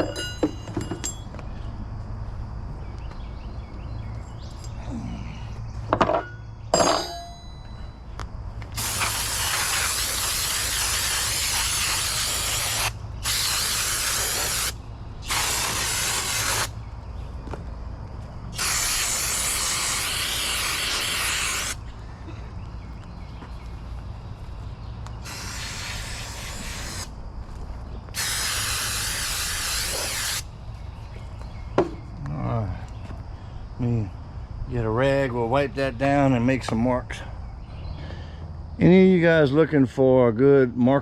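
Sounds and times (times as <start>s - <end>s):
sharp metallic clinks: 0.0s - 1.5s, 6.0s - 8.2s
aerosol spray can hissing: 8.8s - 16.8s, 18.6s - 21.8s, 25.2s - 27.1s, 28.2s - 30.4s.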